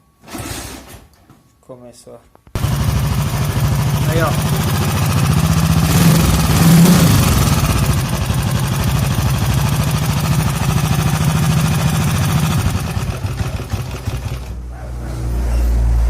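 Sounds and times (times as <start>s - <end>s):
motorcycle engine idling: 2.6s - 14.6s.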